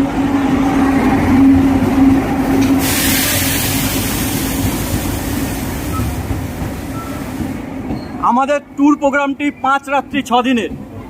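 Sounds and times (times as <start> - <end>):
passenger train running: 0.0 - 11.0
rushing hiss: 2.8 - 7.6.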